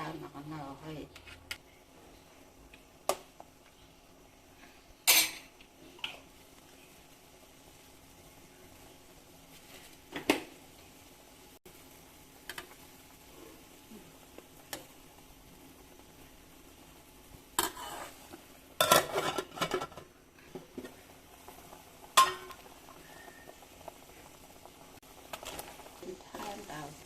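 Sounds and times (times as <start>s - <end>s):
utensils clinking on cookware: 5.0s - 5.5s, 18.8s - 20.0s, 22.2s - 22.6s.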